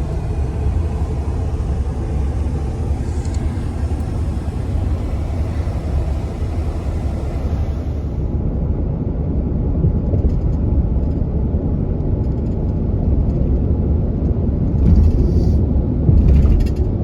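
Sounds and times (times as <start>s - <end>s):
car cabin road noise: 0.0s - 8.7s
rush of noise: 0.0s - 9.1s.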